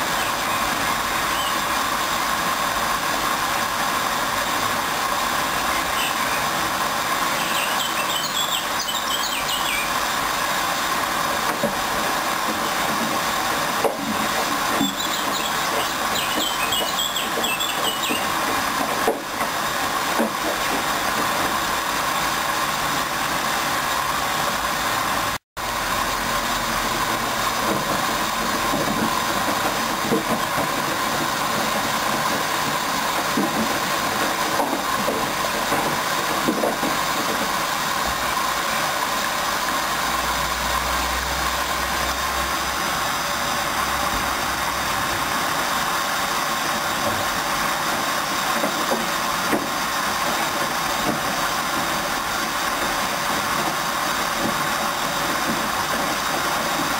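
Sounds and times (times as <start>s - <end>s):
washing machine humming: 0.0s - 56.9s
high squeaky chirps: 7.4s - 9.9s, 14.8s - 18.3s.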